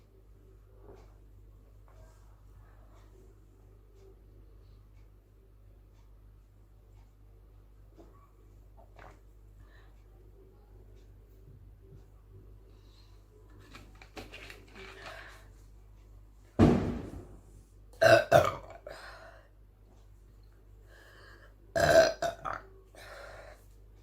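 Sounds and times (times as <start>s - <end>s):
person burping: 18.0s - 19.0s, 21.7s - 22.7s.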